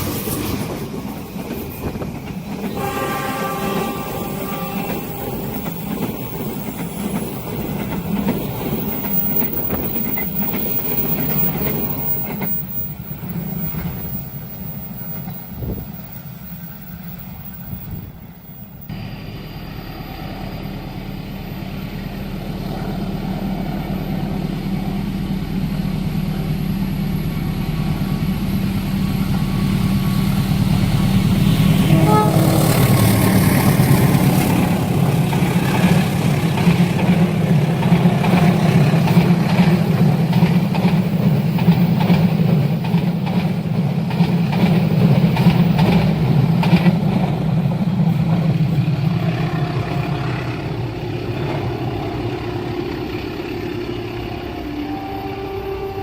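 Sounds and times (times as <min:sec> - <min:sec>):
train rumbling past: 0:00.0 - 0:56.0
horn blast: 0:02.7 - 0:05.1, 0:31.5 - 0:33.6.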